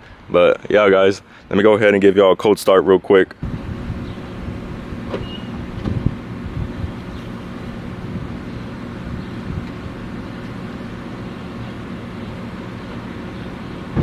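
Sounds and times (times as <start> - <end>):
car engine idling: 3.4 - 14.0.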